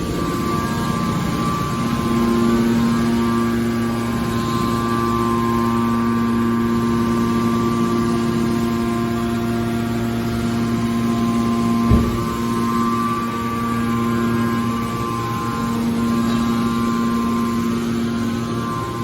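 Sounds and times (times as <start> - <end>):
hydraulic power unit hum: 0.0 - 19.0
dull thump: 11.9 - 12.6.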